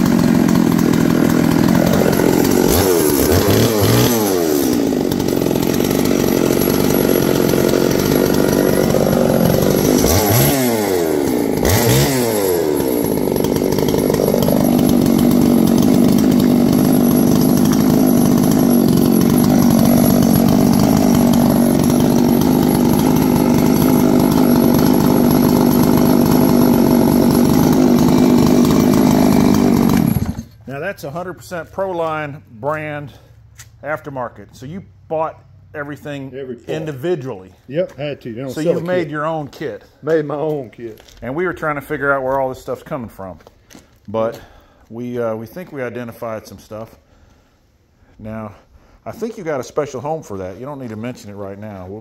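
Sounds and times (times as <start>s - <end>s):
two-stroke chainsaw running: 0.0s - 31.2s, 38.4s - 41.2s.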